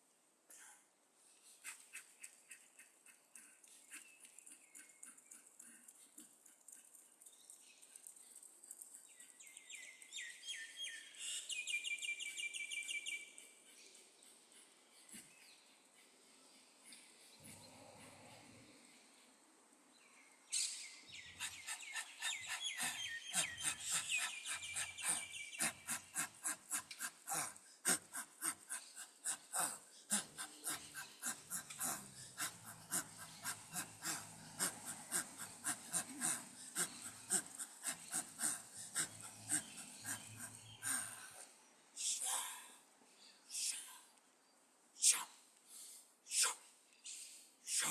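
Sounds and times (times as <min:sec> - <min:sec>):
rapid forceful panting: 0:01.4 - 0:07.2, 0:13.3 - 0:18.6, 0:21.4 - 0:41.4.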